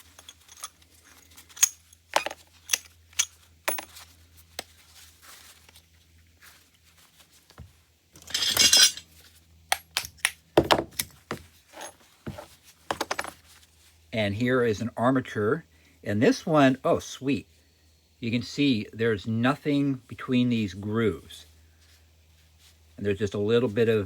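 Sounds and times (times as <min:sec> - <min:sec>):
metal parts clinking: 0:00.0 - 0:04.0, 0:08.2 - 0:09.1
metal clattering rattle: 0:08.2 - 0:09.0.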